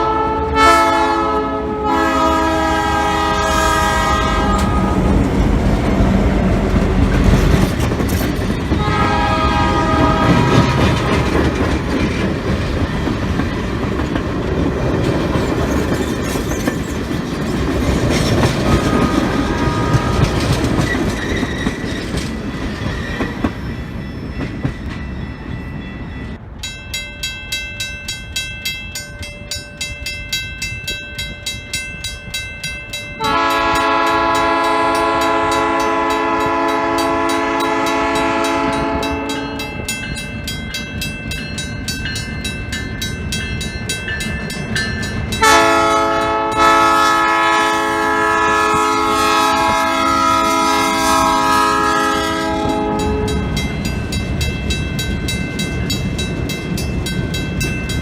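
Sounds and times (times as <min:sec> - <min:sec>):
diesel locomotive horn blast: 0:00.0 - 0:05.6, 0:08.7 - 0:11.0, 0:18.7 - 0:20.5, 0:33.2 - 0:39.8, 0:45.4 - 0:53.6
train wheels rumbling on rails: 0:00.3 - 0:58.0.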